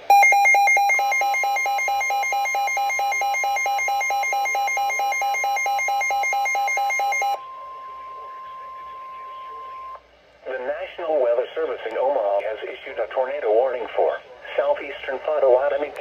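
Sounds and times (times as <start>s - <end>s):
steady warning alarm tone: 0.0s - 10.0s
rapid alarm beeps: 0.1s - 8.0s.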